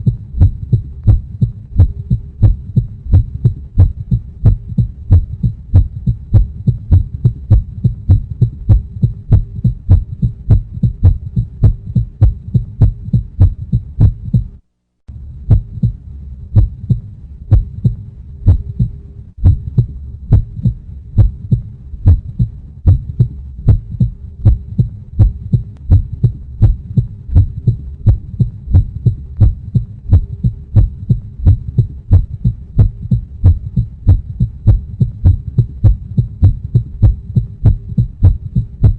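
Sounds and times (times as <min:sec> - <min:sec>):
heartbeat thumps: 0:00.0 - 0:14.6, 0:15.2 - 0:38.9.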